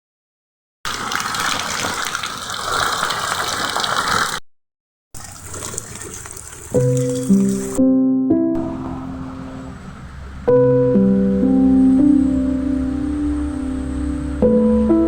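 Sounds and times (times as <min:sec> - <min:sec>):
running water gushing: 0:00.9 - 0:04.4, 0:05.2 - 0:07.8
music: 0:06.8 - 0:15.0.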